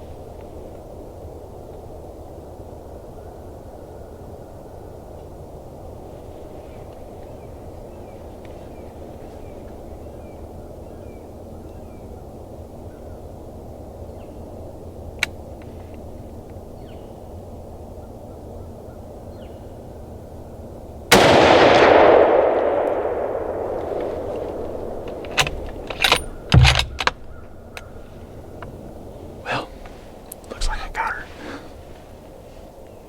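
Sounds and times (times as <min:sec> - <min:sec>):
rifle shot echoing: 0:21.1 - 0:28.1
sharp clicks and knocks: 0:23.8 - 0:28.0.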